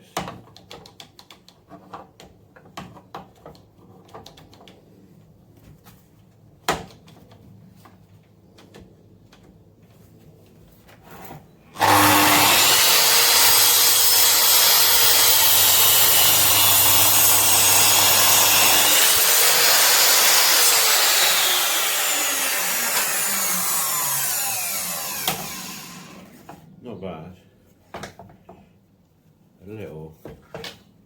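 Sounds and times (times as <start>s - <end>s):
electric saw cutting wood: 11.8s - 26.6s.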